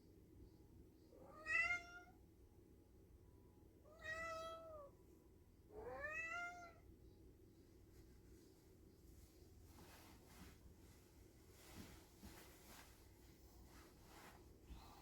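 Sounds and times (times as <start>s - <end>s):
cat meowing: 1.2s - 2.1s, 3.9s - 4.9s, 5.8s - 6.8s.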